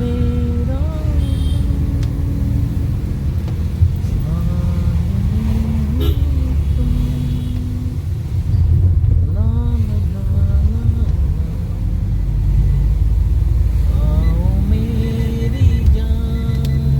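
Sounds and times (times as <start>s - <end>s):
man humming: 0.0s - 3.3s, 4.0s - 8.2s
car engine and tyres rumbling: 0.0s - 16.9s.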